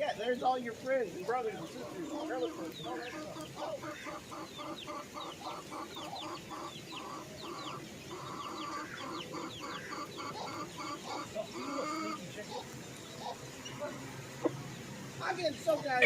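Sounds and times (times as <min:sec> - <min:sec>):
chickens clucking: 0:00.0 - 0:16.0
chicks peeping: 0:00.6 - 0:16.0.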